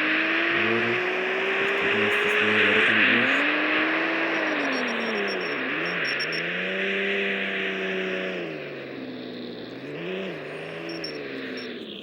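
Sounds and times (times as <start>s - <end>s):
car engine running: 0.0s - 12.0s.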